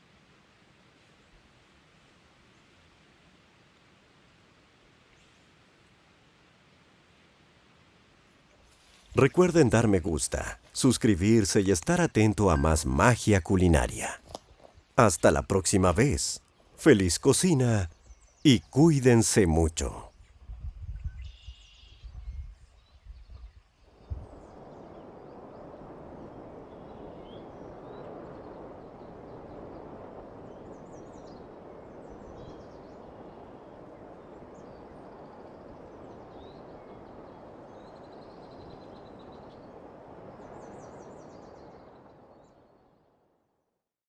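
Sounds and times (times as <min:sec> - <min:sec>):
birds chirping: 0:08.7 - 0:20.2
rushing outdoor ambience: 0:08.8 - 0:14.4, 0:15.0 - 0:17.9.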